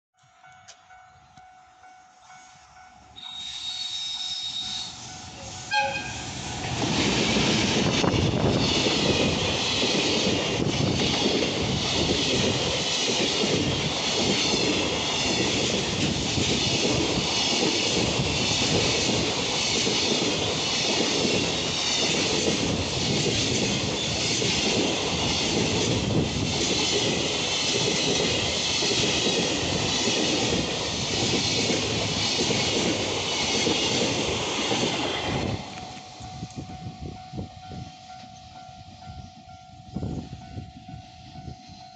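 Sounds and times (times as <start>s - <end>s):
freight train rumbling past: 0.8s - 41.9s
locomotive horn blast: 3.2s - 6.4s.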